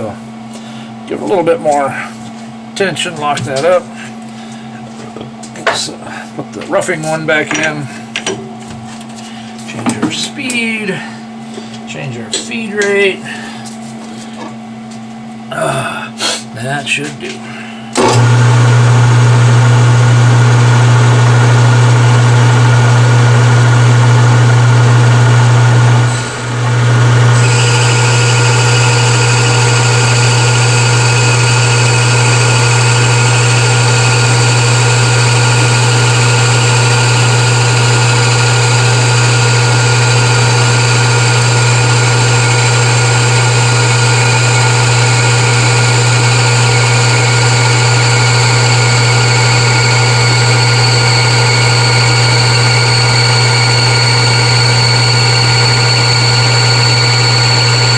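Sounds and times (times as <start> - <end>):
high steady whine: 16.6 - 57.9
metal lathe humming: 17.8 - 57.9.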